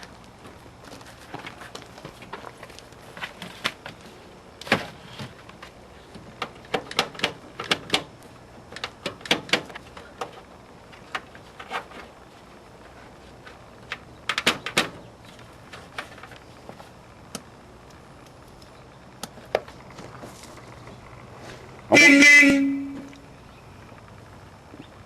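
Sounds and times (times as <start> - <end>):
sharp clicks and clunks: 4.6 - 12.1, 13.8 - 15.0.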